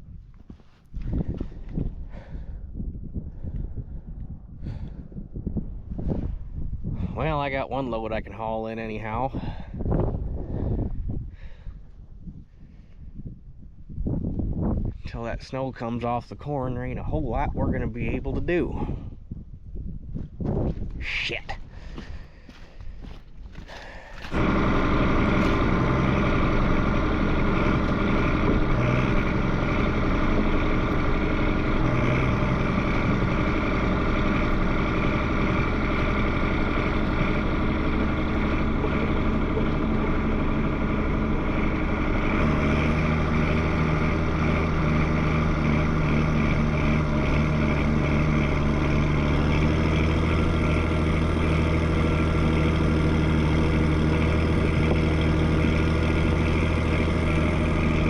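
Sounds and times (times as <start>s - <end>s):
combine harvester engine droning: 6.9s - 10.9s, 15.1s - 19.0s, 22.5s - 58.0s.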